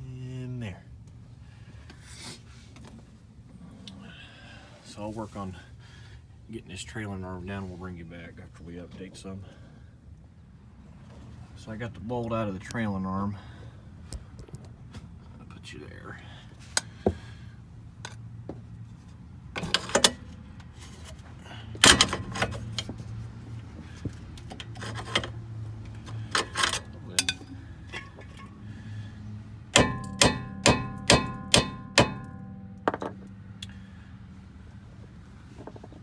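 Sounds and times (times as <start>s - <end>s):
metal tools clanking: 19.6s - 21.2s, 21.8s - 23.0s, 24.4s - 25.4s, 26.0s - 28.6s, 29.8s - 33.3s
ringing metal-on-metal strikes: 29.8s - 33.4s.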